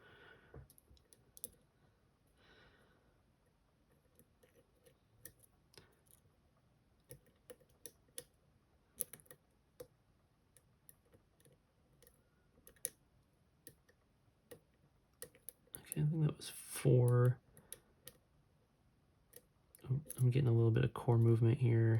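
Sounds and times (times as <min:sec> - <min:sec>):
lock picking clicks: 0:09.0 - 0:09.4.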